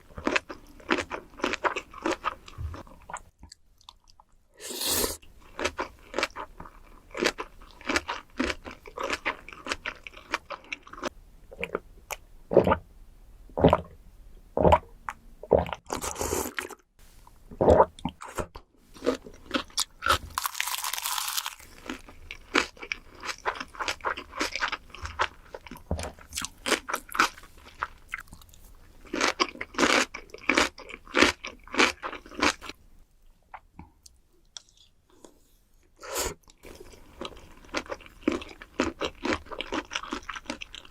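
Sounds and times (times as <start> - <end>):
crunching bites: 19.5 - 23.4.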